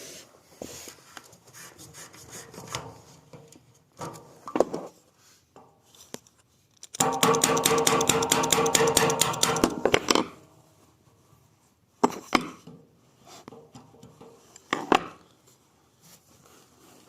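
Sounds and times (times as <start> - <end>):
sharp clicks and knocks: 6.8 - 10.4.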